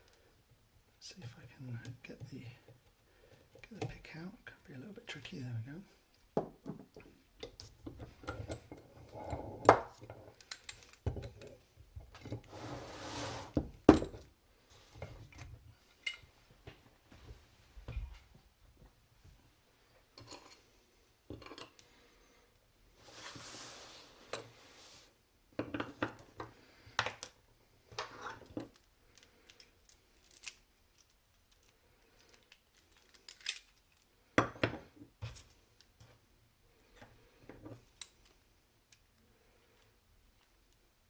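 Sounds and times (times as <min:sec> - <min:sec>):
metal scraping and rubbing: 0:12.4 - 0:13.6
metal clicks and clinks of tools: 0:28.6 - 0:34.0.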